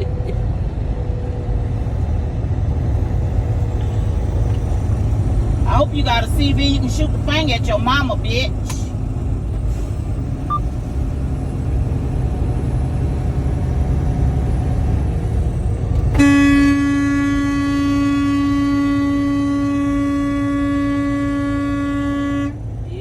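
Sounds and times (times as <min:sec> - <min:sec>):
road rumble at highway speed: 0:00.0 - 0:23.0
long horn blast: 0:16.1 - 0:22.7.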